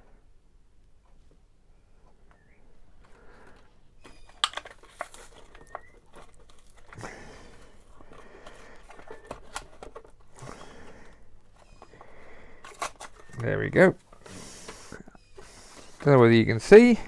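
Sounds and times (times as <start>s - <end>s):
sharp plastic clicks: 3.5s - 10.9s
plastic packaging crinkling: 4.0s - 17.0s.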